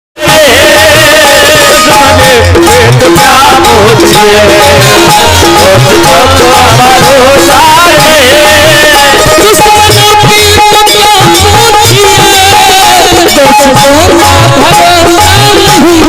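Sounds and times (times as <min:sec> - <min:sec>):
steady drum beat: 0:00.2 - 0:16.0.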